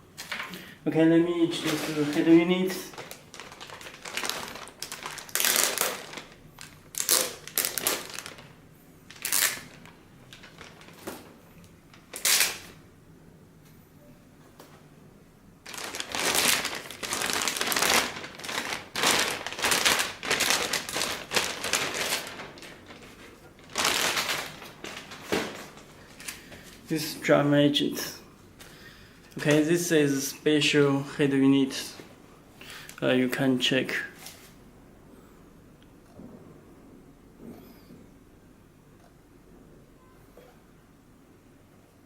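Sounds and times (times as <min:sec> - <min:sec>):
packaging crinkling and rustling: 0:00.2 - 0:00.6, 0:01.4 - 0:12.8, 0:15.6 - 0:26.9.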